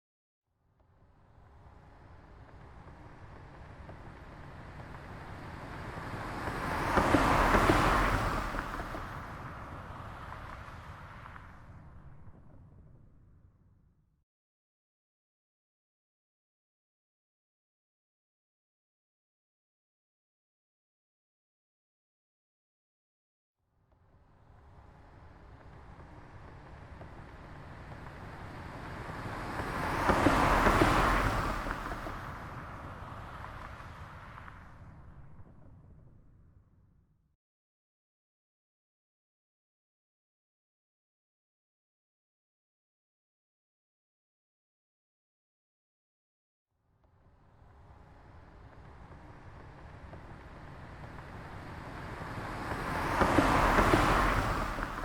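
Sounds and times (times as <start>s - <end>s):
car passing by: 0.9s - 13.2s, 24.0s - 36.5s, 47.1s - 55.0s.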